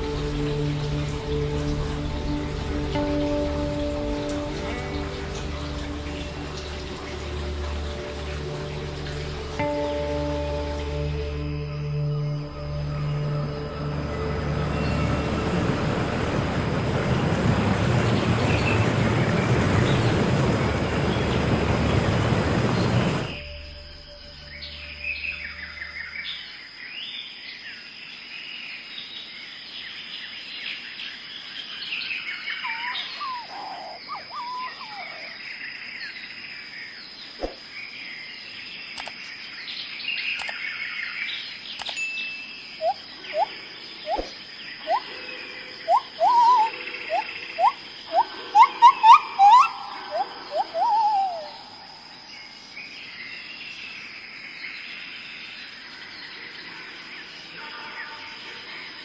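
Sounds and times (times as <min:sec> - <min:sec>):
birds chirping and singing: 0:31.8 - 0:36.2, 0:42.8 - 0:59.0
bird whistling rising notes: 0:32.5 - 0:35.4, 0:42.8 - 0:52.5.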